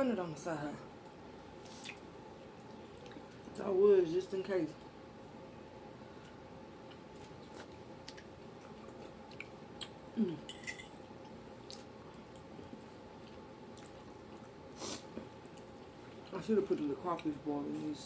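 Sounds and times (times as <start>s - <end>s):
faint steady hum: 0.0s - 18.0s
people chewing: 1.6s - 3.6s, 6.0s - 10.6s, 11.2s - 18.0s
person humming: 10.2s - 10.5s.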